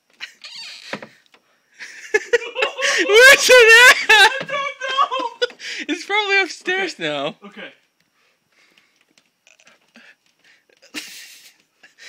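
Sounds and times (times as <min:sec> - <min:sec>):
faint clicks and rustles: 0:07.8 - 0:12.0.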